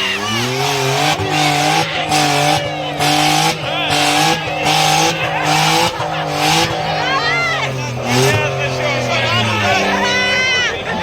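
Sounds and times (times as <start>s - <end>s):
car engine revving high: 0.0s - 11.0s
tyres squealing: 0.0s - 11.0s.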